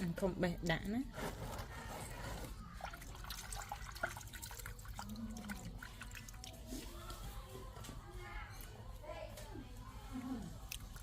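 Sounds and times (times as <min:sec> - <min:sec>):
baby monkey eating wet clicks: 0:10.6 - 0:11.0.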